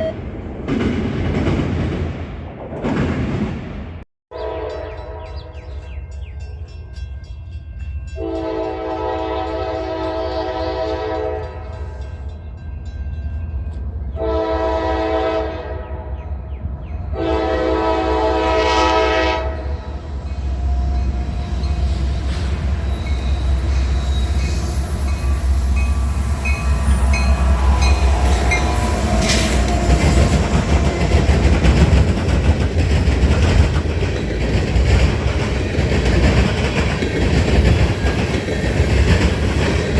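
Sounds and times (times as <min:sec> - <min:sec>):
train wheels clattering on rails: 0:00.3 - 0:04.0, 0:19.6 - 0:39.9
locomotive air horn blasts: 0:04.3 - 0:05.4, 0:08.2 - 0:12.0, 0:14.2 - 0:16.1, 0:17.2 - 0:20.0.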